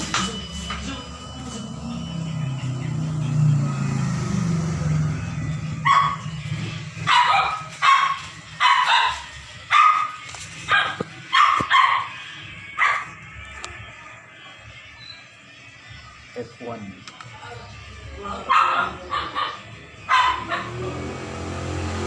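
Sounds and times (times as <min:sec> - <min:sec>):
dog barking: 0:05.8 - 0:06.3, 0:07.0 - 0:12.2, 0:12.8 - 0:13.2, 0:18.4 - 0:20.8.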